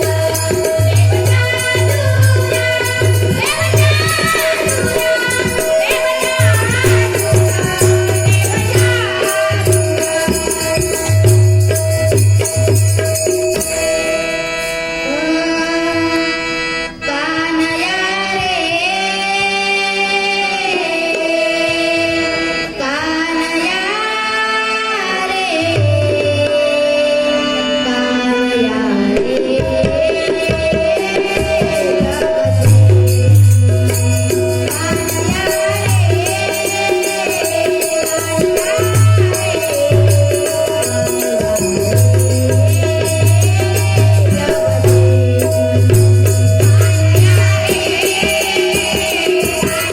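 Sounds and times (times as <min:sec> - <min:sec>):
child singing: 0:00.0 - 0:11.6, 0:15.1 - 0:49.9
hand drum: 0:00.0 - 0:14.3, 0:29.2 - 0:49.9
harmonium: 0:00.0 - 0:49.9.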